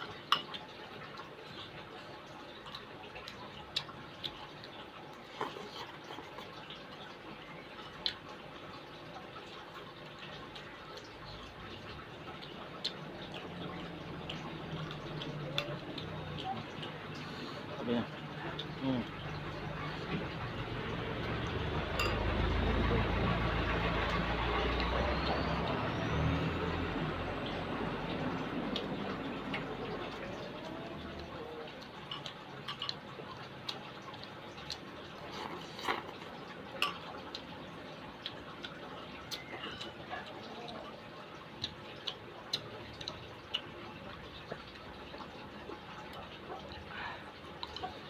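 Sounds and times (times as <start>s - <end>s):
vehicle engine rumble passing: 13.0s - 31.9s
faint rising whine: 20.4s - 31.6s.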